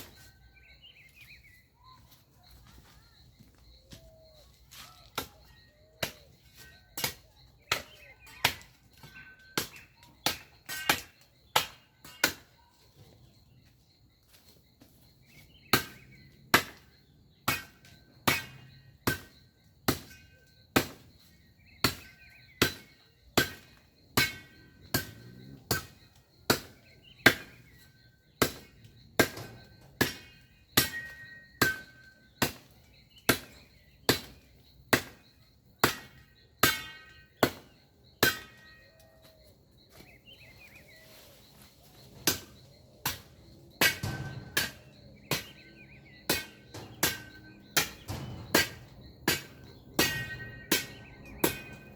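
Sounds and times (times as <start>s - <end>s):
blade chopping branches: 15.3s - 35.2s, 39.9s - 51.9s.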